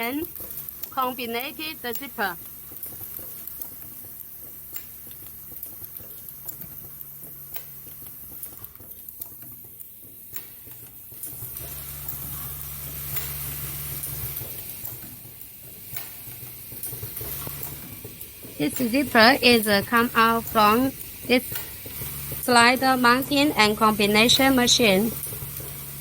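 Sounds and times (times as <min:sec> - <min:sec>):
machine humming: 0:16.2 - 0:26.0.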